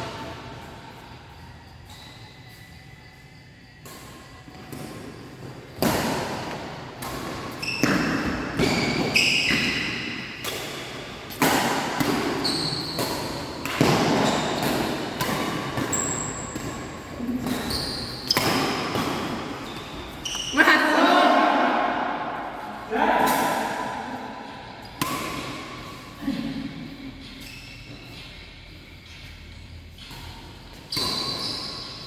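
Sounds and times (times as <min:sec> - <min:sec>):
shoes squeaking on court: 0:00.1 - 0:11.4, 0:12.2 - 0:21.1, 0:26.9 - 0:32.0
racket hitting shuttlecock: 0:05.7 - 0:20.5, 0:23.2 - 0:26.0.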